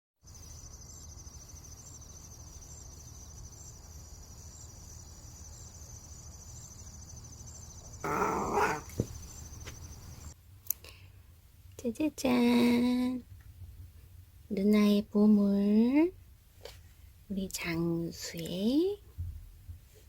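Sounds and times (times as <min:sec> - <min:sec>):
pet short vocalization: 0:08.0 - 0:09.0.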